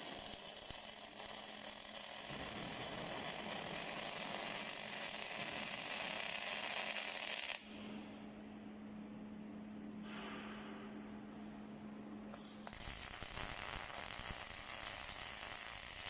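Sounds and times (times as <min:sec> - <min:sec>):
welding arc hissing and crackling: 0:00.0 - 0:07.9, 0:12.4 - 0:16.0
steady low hum: 0:07.6 - 0:15.1.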